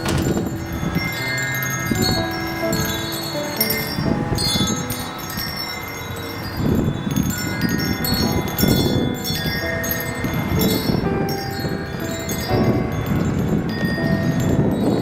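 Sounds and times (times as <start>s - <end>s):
low rumble of wind: 0.0s - 15.0s
wind chimes clanging: 0.0s - 15.0s.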